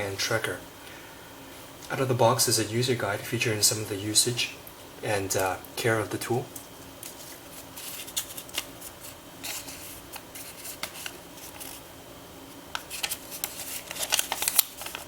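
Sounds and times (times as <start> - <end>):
paper and cardboard rustling: 7.0 - 11.8, 12.7 - 15.0.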